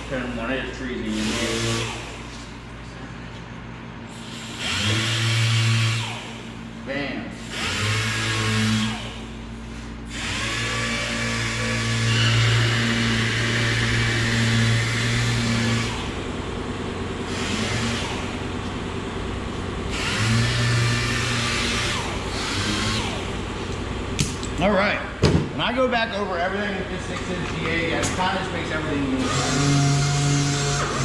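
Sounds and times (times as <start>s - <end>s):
orbital sander humming: 4.6s - 6.4s, 10.1s - 16.4s, 17.2s - 18.5s, 19.8s - 23.5s, 29.2s - 31.0s.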